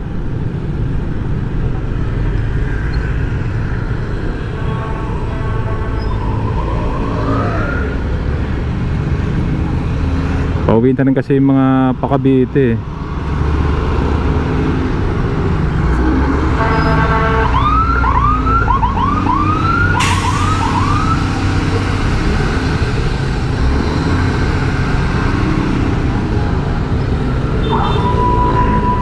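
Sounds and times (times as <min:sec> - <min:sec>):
road traffic rumble: 0:00.0 - 0:29.0
emergency vehicle siren whooping: 0:02.5 - 0:08.8, 0:15.8 - 0:29.0
held siren tone: 0:02.8 - 0:08.7, 0:15.8 - 0:21.8, 0:26.4 - 0:29.0.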